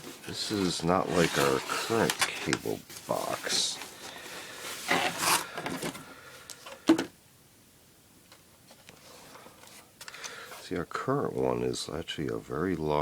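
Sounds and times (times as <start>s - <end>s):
packaging rubbing and scraping: 0.0s - 5.9s.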